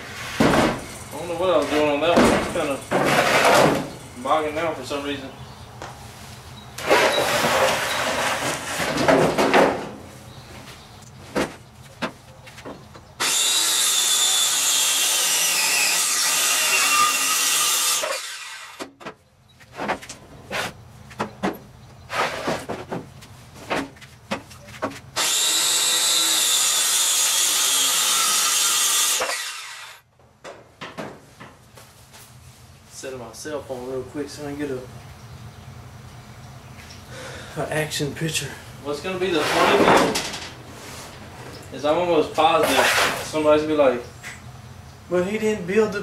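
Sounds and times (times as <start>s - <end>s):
wood knocking and clattering: 2.1s - 3.9s, 8.8s - 10.0s, 39.7s - 40.5s
power saw cutting wood: 13.2s - 18.9s, 25.2s - 30.0s.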